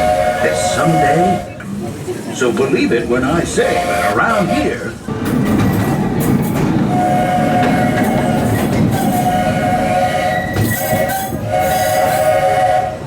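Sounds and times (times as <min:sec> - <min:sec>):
steam whistle blasts: 0:00.0 - 0:01.6, 0:03.6 - 0:04.8, 0:06.9 - 0:13.0
train rumbling: 0:00.0 - 0:13.0.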